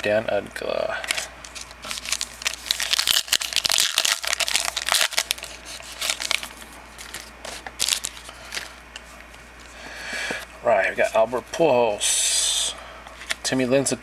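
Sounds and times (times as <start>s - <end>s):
foil card pack tearing: 1.1s - 8.7s
wrapper crinkling: 1.1s - 8.7s.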